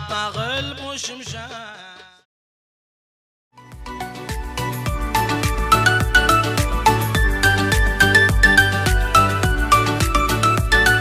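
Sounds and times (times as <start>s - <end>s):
background music with bass and beat: 3.6s - 11.0s.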